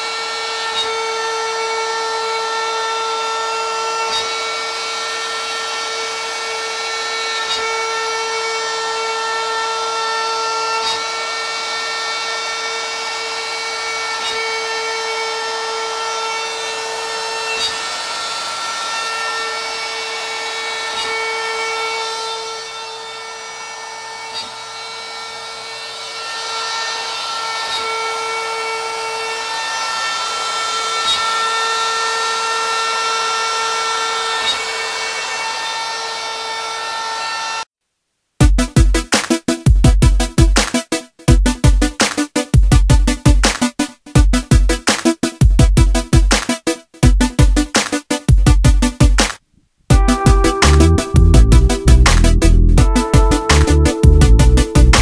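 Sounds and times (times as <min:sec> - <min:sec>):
router bit cutting wood: 0:00.0 - 0:37.7, 0:50.0 - 0:55.0
router spindle high whine: 0:00.0 - 0:37.7.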